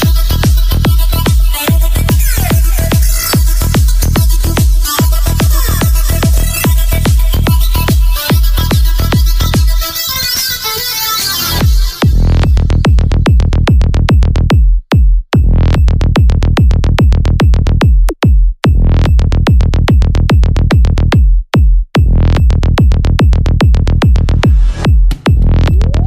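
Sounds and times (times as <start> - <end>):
psy-trance music: 0.0 - 14.6, 22.0 - 26.0.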